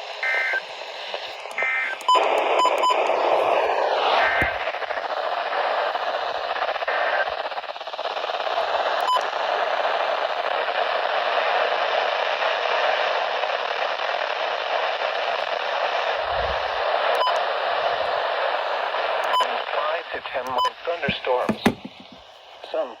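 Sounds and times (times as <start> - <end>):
radio static hiss: 0.0 - 23.0
low thump: 20.5 - 22.2.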